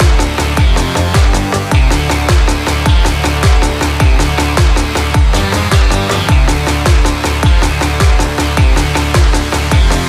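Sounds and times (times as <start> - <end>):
drum and bass beat: 0.0 - 10.0
held bass notes: 0.0 - 10.0.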